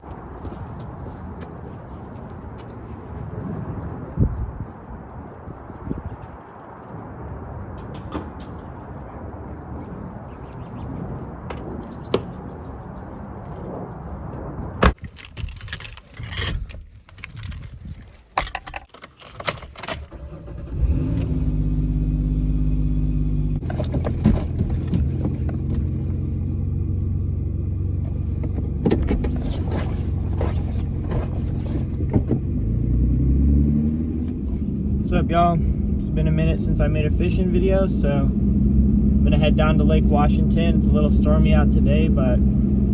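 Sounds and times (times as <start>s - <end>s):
keys jangling: 15.0s - 20.1s.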